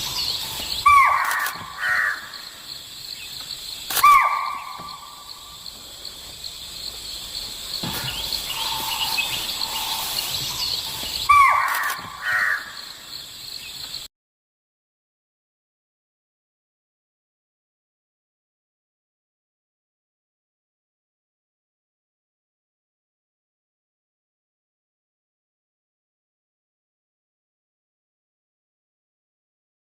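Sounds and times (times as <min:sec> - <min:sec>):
steady insect buzz: 0:00.0 - 0:14.1
deer calling: 0:00.8 - 0:02.5, 0:03.9 - 0:05.4, 0:07.9 - 0:10.3, 0:11.3 - 0:12.8.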